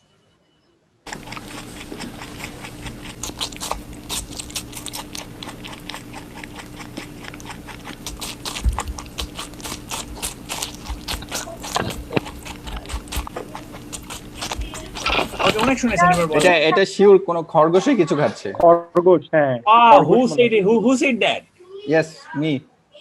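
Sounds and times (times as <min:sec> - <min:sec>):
faint steady hum: 0:01.0 - 0:23.0
rabbit chewing crunchy bites: 0:01.1 - 0:16.6.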